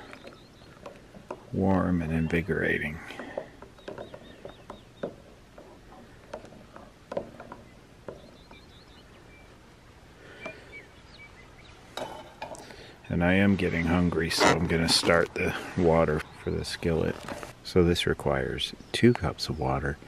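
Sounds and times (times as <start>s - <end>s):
small clicks and knocks: 0.0s - 1.5s, 3.1s - 8.6s
faint bird chirps: 0.0s - 5.3s, 7.5s - 11.9s.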